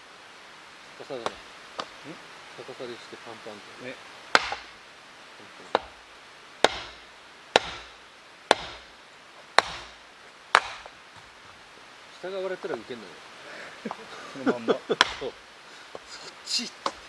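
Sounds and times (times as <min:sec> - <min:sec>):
axe striking wood: 0:04.3 - 0:04.8, 0:05.7 - 0:06.0, 0:06.6 - 0:08.9, 0:09.6 - 0:11.0, 0:15.0 - 0:15.4.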